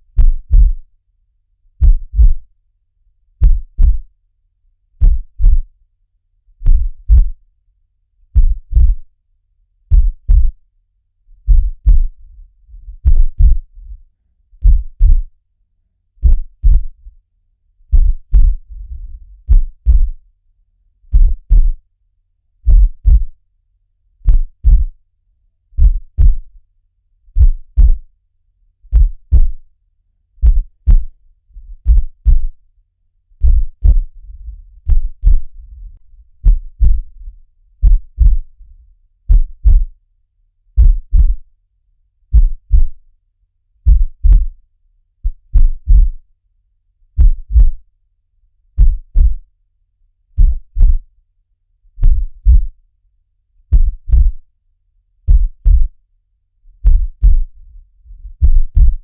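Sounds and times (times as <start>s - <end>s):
faint low rumble: 0.0s - 1.0s, 1.7s - 2.6s, 3.4s - 4.2s, 5.0s - 5.8s, 6.5s - 7.5s, 8.3s - 9.1s, 9.9s - 10.7s, 11.3s - 15.4s, 16.2s - 17.2s, 17.8s - 20.4s, 21.0s - 21.9s, 22.6s - 23.4s, 24.2s - 25.1s, 25.8s - 26.6s, 27.3s - 28.2s, 28.9s - 29.8s, 30.4s - 40.0s, 40.7s - 41.5s, 42.2s - 43.1s, 43.8s - 44.6s, 45.2s - 46.3s, 47.1s - 47.8s, 48.8s - 49.5s, 50.4s - 51.1s, 51.9s - 52.8s, 53.6s - 54.5s, 55.3s - 56.1s, 56.7s - 59.0s
heartbeat thumps: 0.2s - 0.9s, 1.8s - 2.5s, 3.4s - 4.1s, 5.0s - 5.7s, 6.6s - 7.4s, 8.4s - 9.1s, 9.9s - 10.6s, 11.4s - 14.0s, 14.6s - 15.3s, 16.2s - 17.0s, 17.9s - 20.2s, 21.1s - 21.8s, 22.6s - 23.4s, 24.2s - 25.0s, 25.8s - 26.5s, 27.4s - 28.1s, 28.9s - 29.6s, 30.4s - 32.6s, 33.4s - 38.6s, 39.3s - 40.0s, 40.8s - 41.5s, 42.3s - 43.0s, 43.8s - 44.6s, 45.2s - 46.2s, 47.2s - 47.8s, 48.8s - 49.4s, 50.4s - 51.0s, 52.0s - 52.8s, 53.7s - 54.4s, 55.3s - 56.0s, 56.8s - 59.0s.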